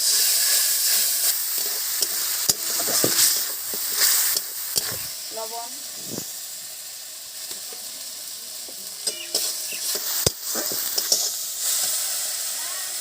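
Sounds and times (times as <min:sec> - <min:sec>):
spice paste sizzling in hot oil: 0:00.0 - 0:13.0
spatula scraping and knocking pan: 0:01.6 - 0:05.1, 0:09.0 - 0:11.5.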